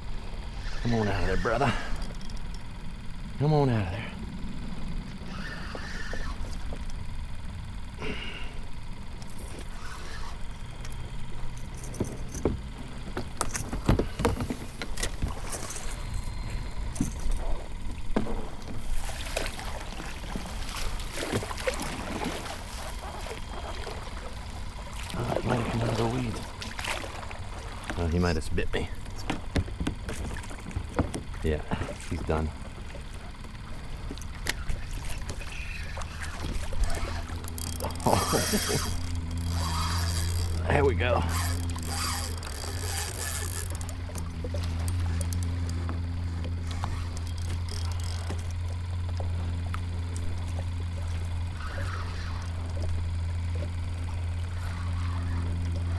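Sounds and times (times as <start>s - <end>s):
steady low hum: 0.0s - 55.9s
steady low rumble: 0.0s - 55.9s
fishing gear clicking and scraping: 1.4s - 2.8s, 9.1s - 19.8s, 32.0s - 55.9s
water sloshing and splashing: 9.2s - 55.9s.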